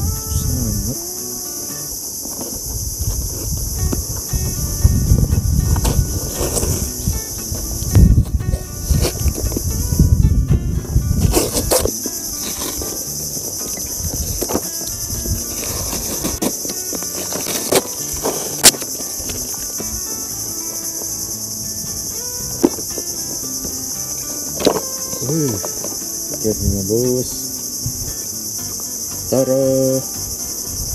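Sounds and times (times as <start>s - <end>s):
insects chirring: 0.0s - 30.9s.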